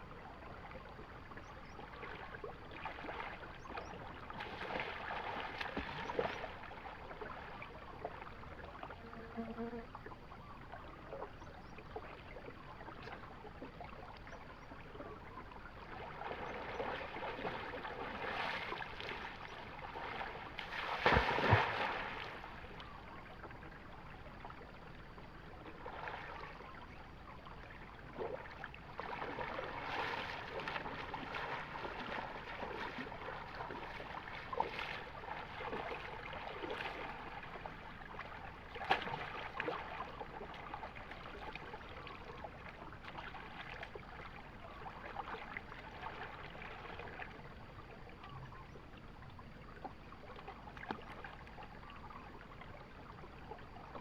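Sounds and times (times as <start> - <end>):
river water flowing: 10.0 - 54.0
loud water splash: 20.9 - 22.2.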